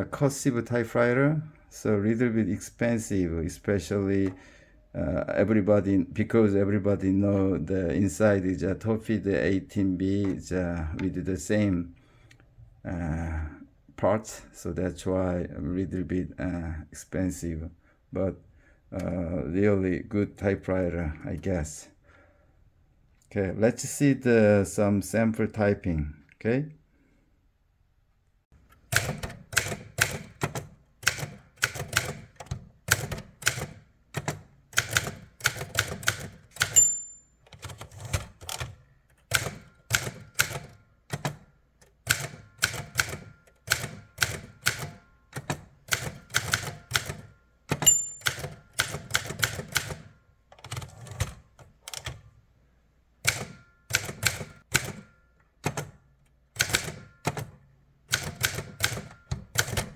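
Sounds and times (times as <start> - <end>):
typewriter keys striking: 28.9 - 41.4, 42.1 - 52.2, 53.3 - 55.1, 56.6 - 57.5, 58.1 - 59.9
typewriter bell ring: 36.6 - 37.7, 47.8 - 48.7.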